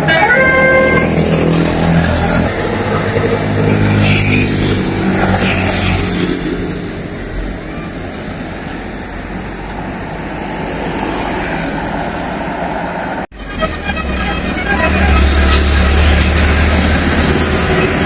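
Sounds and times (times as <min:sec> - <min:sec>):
musical air horn notes: 0:00.0 - 0:01.2, 0:13.3 - 0:18.0
bus engine running close: 0:00.0 - 0:18.0
bus traffic noise: 0:00.0 - 0:18.0.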